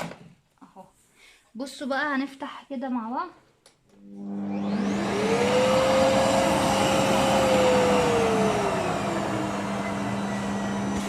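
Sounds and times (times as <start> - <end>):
vacuum cleaner motor whine: 4.0 - 11.0.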